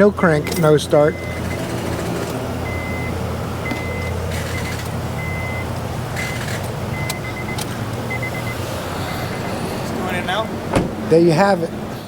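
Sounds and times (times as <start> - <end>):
high electronic beeping: 6.2 - 10.7
low hum: 7.4 - 11.1.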